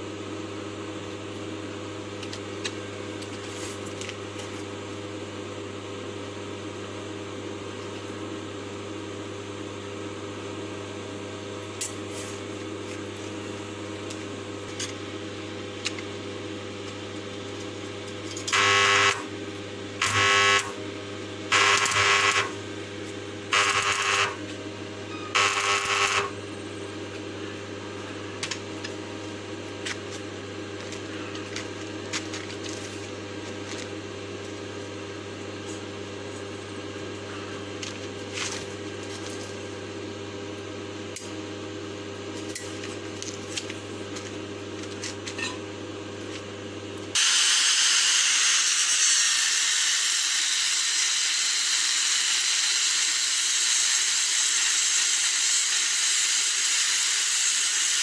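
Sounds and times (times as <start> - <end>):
steady mechanical hum: 0.0 - 58.0.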